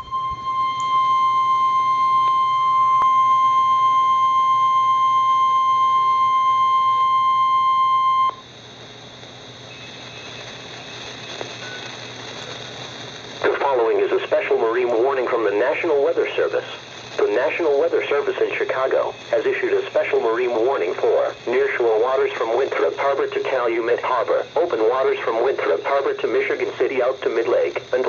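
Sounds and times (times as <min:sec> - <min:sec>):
loud steady alarm beep: 0:00.0 - 0:08.5, 0:09.7 - 0:12.2
radio hiss: 0:05.8 - 0:28.0.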